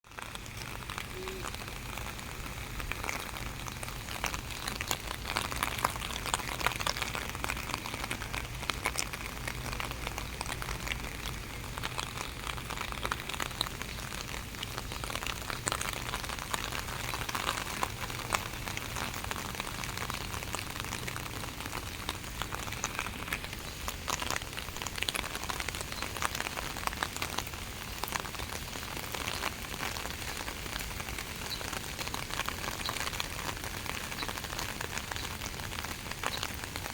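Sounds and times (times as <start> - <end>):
steady rain falling: 0.0 - 36.9.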